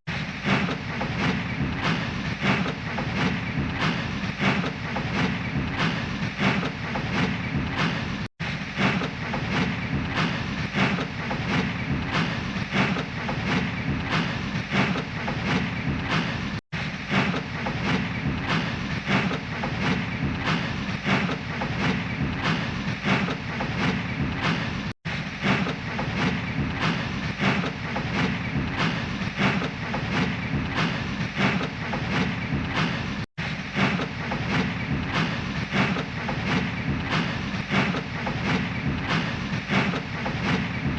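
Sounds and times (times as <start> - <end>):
steam locomotive chuffing: 0.1 - 40.9.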